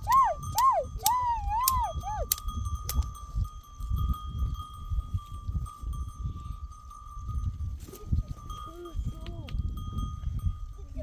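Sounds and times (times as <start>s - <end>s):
sharp clicks: 0.0s - 3.1s.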